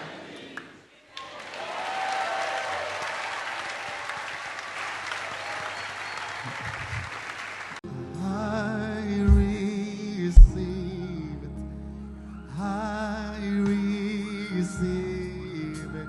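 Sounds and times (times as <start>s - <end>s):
congregation applauding: 0.0s - 7.8s.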